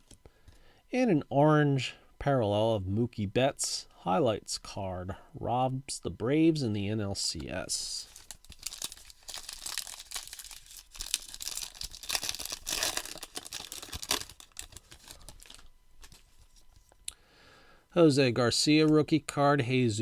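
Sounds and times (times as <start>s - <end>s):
foil wrapper tearing and crinkling: 8.0s - 16.4s.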